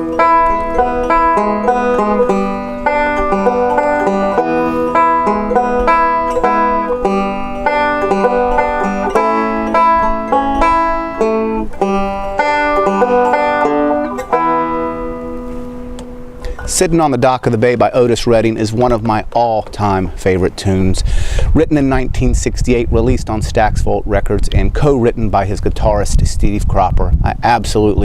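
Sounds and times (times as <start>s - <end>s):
banjo plucked notes: 0.0s - 17.6s.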